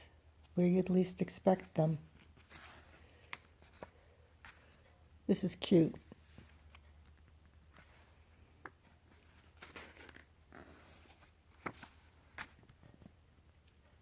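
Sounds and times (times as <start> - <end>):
paper pages rustling: 3.6 - 4.8, 9.1 - 13.1.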